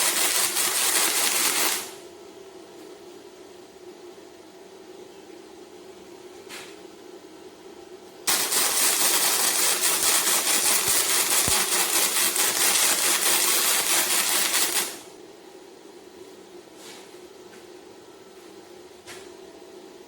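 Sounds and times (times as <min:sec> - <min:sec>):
welding arc crackling and hissing: 0:00.0 - 0:02.0, 0:08.3 - 0:15.1.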